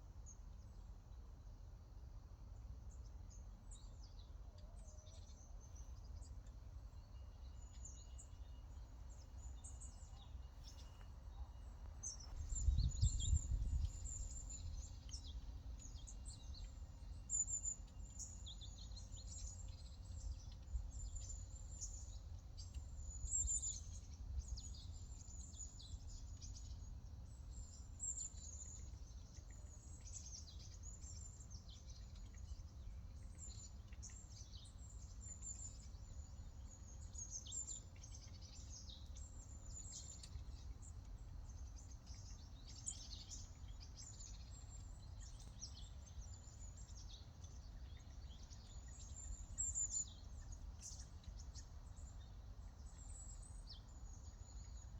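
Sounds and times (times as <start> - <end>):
small birds chirping: 3.7 - 54.9
faint low rumble: 9.1 - 17.7.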